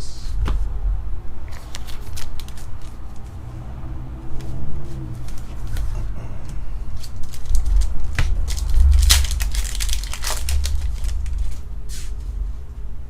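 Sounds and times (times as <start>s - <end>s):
foil wrapper crinkling and tearing: 1.5s - 3.3s, 6.9s - 12.1s.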